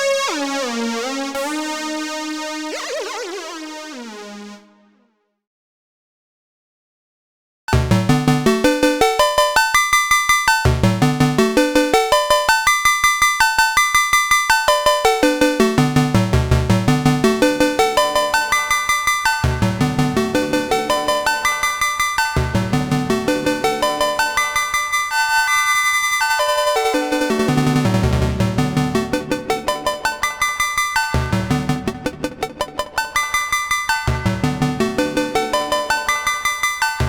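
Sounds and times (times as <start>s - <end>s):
synthesizer arpeggio: 0.0s - 5.2s.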